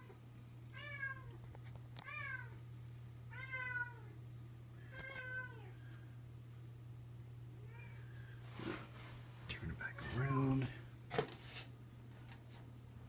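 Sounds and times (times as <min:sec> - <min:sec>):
steady low hum: 0:00.0 - 0:13.0
cat meowing: 0:03.3 - 0:04.1.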